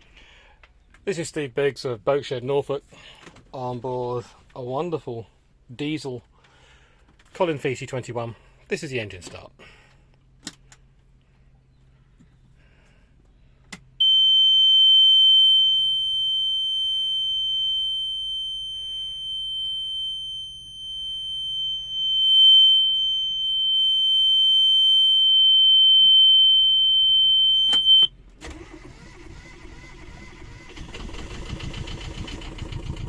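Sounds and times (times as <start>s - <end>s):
warning buzzer high tone: 14.0s - 24.8s
diesel engine cranking and starting: 28.3s - 33.0s.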